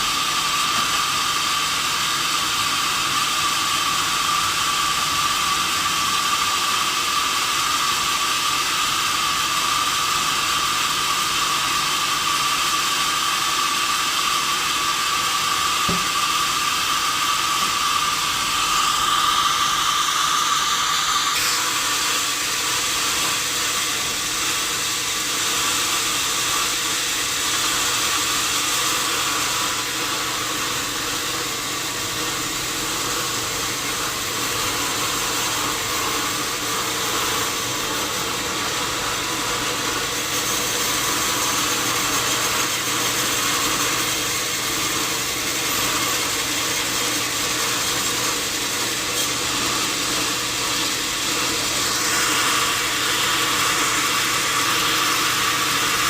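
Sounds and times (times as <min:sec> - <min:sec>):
sawmill machinery running: 0:00.0 - 0:56.0.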